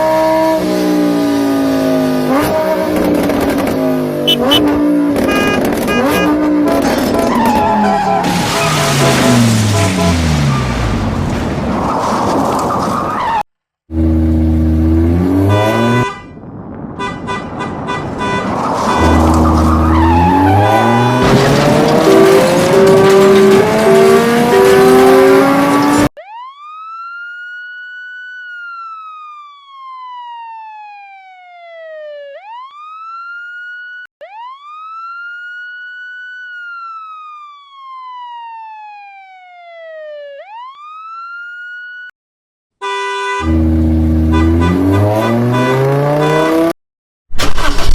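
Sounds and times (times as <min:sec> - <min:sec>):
electronic wailing siren: 0:18.9 - 0:42.1.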